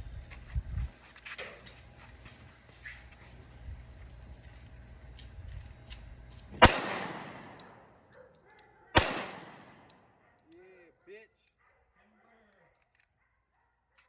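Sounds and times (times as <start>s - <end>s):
pistol shots: 6.6s - 8.0s, 8.9s - 10.1s.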